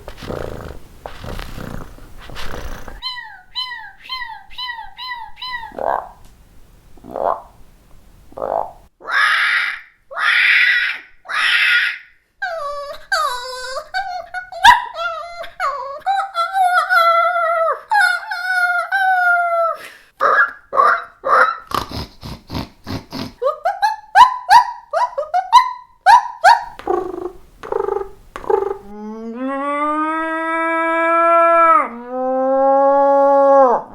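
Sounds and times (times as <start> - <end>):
girl imitating animal sounds: 2.8 - 6.2, 9.0 - 21.6, 26.5 - 33.9.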